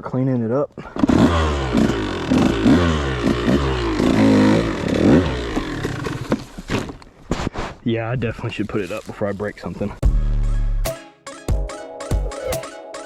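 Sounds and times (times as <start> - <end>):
dirt bike engine revving: 0.8 - 6.9.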